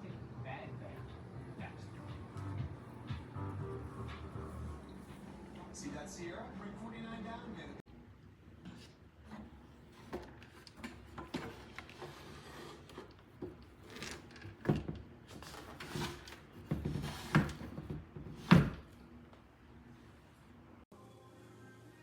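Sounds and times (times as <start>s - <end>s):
drawer sliding and knocking: 8.7s - 19.0s.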